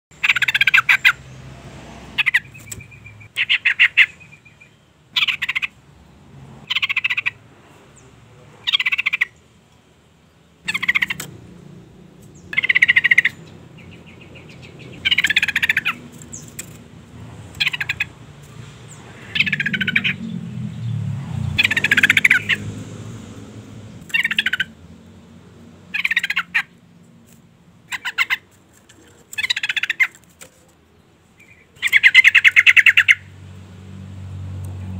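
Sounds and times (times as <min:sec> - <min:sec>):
bird chattering call: 0:00.1 - 0:01.2, 0:02.2 - 0:05.8, 0:06.7 - 0:07.4, 0:08.6 - 0:09.4, 0:10.6 - 0:11.4, 0:12.4 - 0:16.8, 0:17.5 - 0:18.2, 0:18.9 - 0:20.4, 0:21.6 - 0:22.7, 0:24.0 - 0:24.8, 0:25.9 - 0:26.7, 0:27.9 - 0:28.5, 0:29.2 - 0:30.2, 0:31.4 - 0:33.3.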